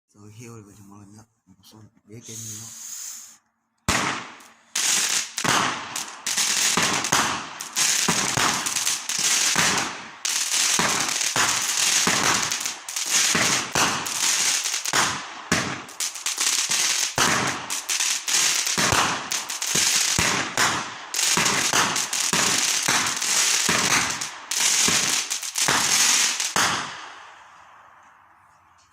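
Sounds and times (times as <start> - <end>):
loud crackling hiss: 2.2 - 3.4, 4.4 - 26.6.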